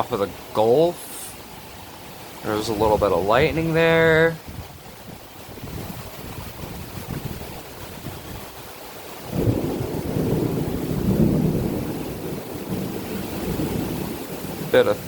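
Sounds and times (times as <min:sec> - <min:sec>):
steady rain: 0:00.0 - 0:15.0
thunder rolling: 0:09.2 - 0:15.0.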